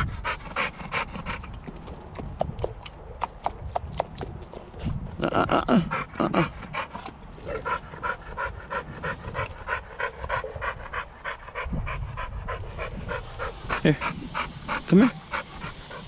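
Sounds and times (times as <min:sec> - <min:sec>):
dog panting: 0:00.0 - 0:16.0.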